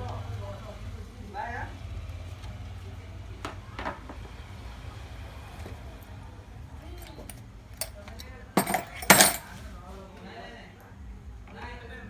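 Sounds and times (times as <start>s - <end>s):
scraping clatters: 7.0s - 9.6s
small hard parts clicking and clinking: 7.0s - 9.6s.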